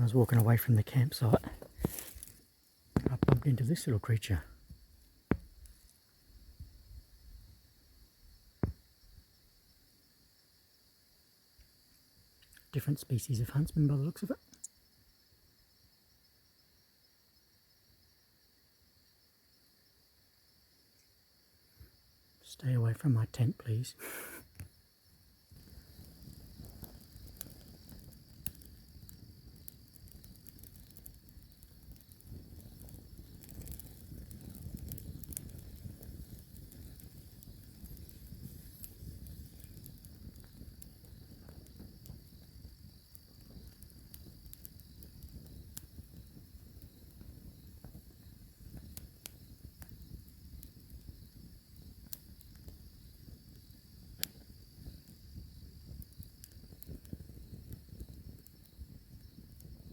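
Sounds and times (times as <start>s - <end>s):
night insects droning: 0.0s - 59.9s
faint clicks: 12.4s - 12.7s, 14.4s - 14.8s, 25.6s - 42.2s, 54.2s - 55.2s.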